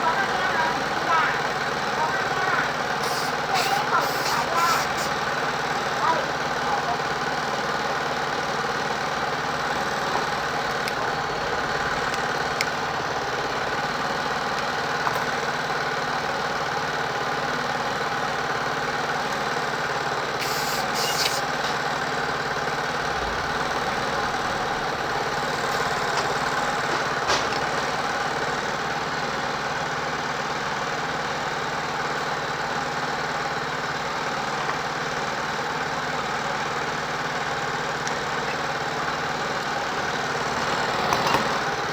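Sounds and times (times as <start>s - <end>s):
steady mechanical hum: 0.0s - 41.9s
short high hisses: 3.0s - 5.2s, 20.4s - 21.6s.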